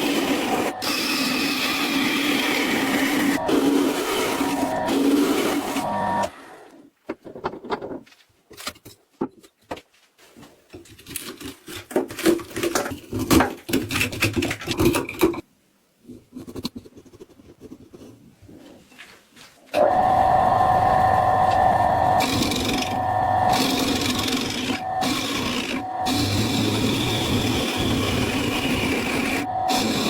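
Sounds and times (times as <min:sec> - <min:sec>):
wood being worked by hand: 0:00.0 - 0:06.4, 0:19.7 - 0:30.0
motor running: 0:19.9 - 0:30.0.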